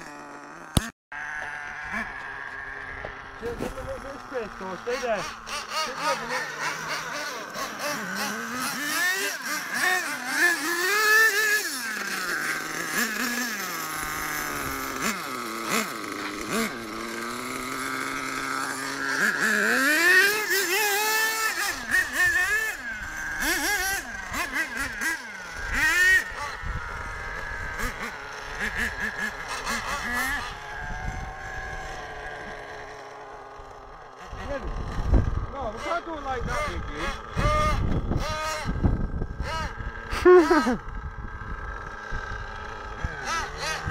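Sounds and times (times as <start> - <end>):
rc truck engines revving: 0.0 - 43.9.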